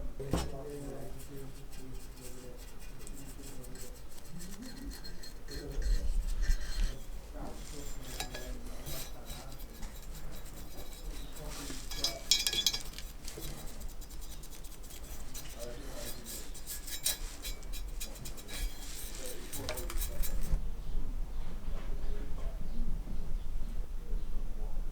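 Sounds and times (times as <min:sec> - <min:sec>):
dull thump: 0:00.2 - 0:00.8
metal tools clinking and knocking: 0:05.8 - 0:14.4
ringing metallic clink: 0:11.9 - 0:13.1.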